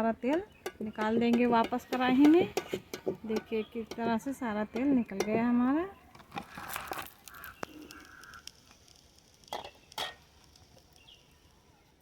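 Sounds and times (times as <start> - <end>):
frying oil sizzling: 7.0 - 11.7.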